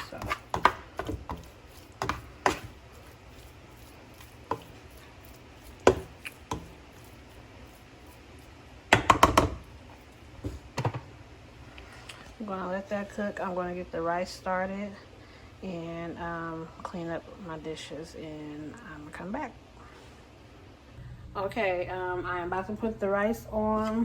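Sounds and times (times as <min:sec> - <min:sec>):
utensil knocking against pan: 0:05.8 - 0:06.7, 0:08.9 - 0:09.6.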